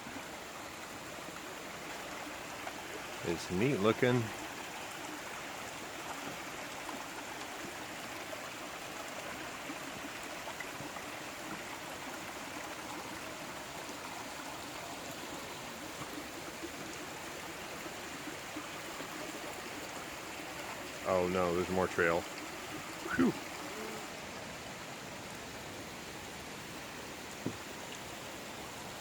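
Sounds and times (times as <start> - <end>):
waterfall rushing: 19.6 - 27.8.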